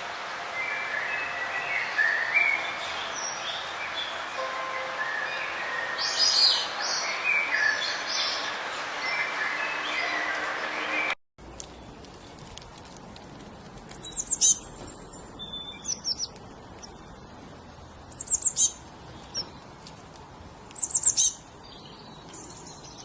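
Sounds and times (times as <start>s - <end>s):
songbird singing: 0.1s - 12.5s, 13.9s - 20.0s, 20.6s - 23.0s
soft bird chirps: 13.9s - 17.2s, 18.1s - 19.8s, 20.7s - 23.0s.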